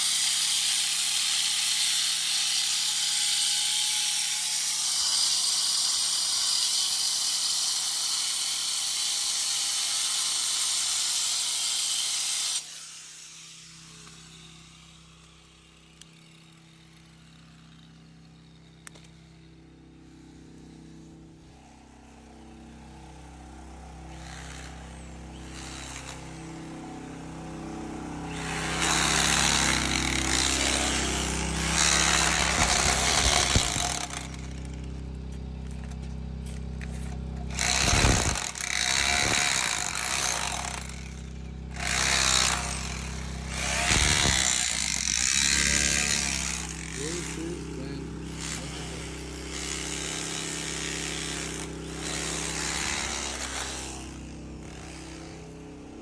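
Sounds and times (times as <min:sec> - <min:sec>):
power tool grinding tile: 0:00.0 - 0:15.0, 0:24.1 - 0:56.0
low machine hum: 0:13.8 - 0:56.0.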